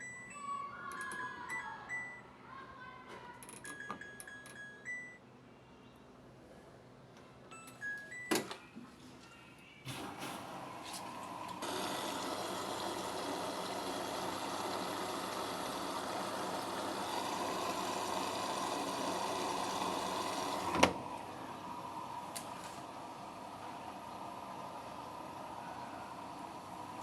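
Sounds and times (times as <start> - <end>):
washing machine whirring: 9.8 - 27.0.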